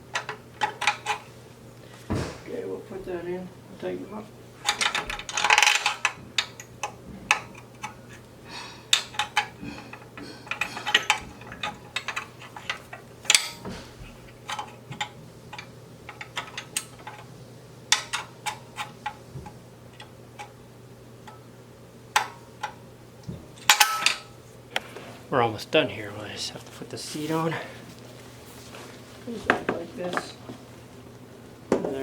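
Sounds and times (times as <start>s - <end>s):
hand tool clicking on bolts: 8.9s - 13.7s.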